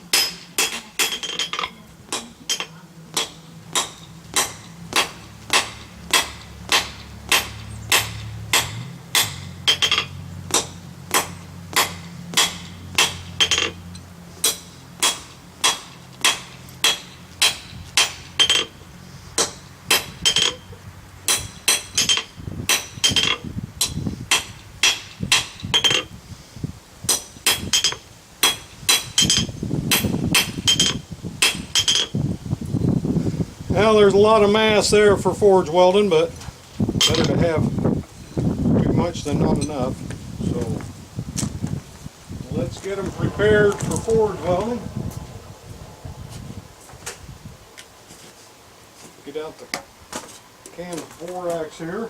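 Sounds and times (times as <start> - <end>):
hammer striking steel on anvil: 0.1 - 13.8, 14.4 - 18.7, 19.4 - 20.6, 21.3 - 26.0, 27.1 - 32.1
low hum: 42.3 - 47.7.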